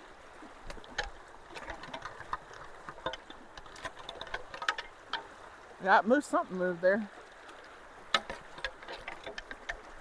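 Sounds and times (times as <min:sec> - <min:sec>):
creek water rushing through culvert: 0:00.0 - 0:10.0
clicks and knocks: 0:00.6 - 0:05.3, 0:08.1 - 0:10.0.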